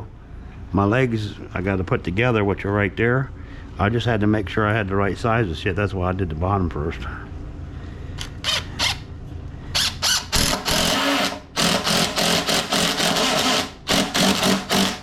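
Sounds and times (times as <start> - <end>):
power drill driving screws: 9.8 - 15.0.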